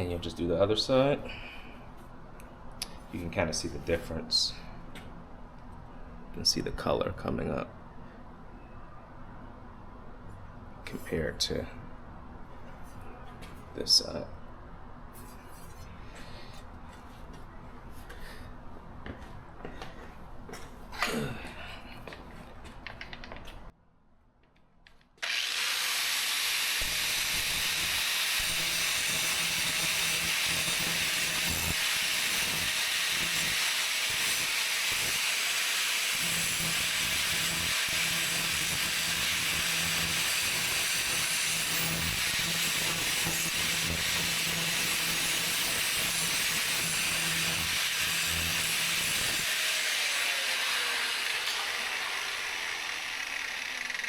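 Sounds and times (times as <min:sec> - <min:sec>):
grinder grinding steel blade: 0:25.2 - 0:54.0
grinder motor hum: 0:25.2 - 0:54.0.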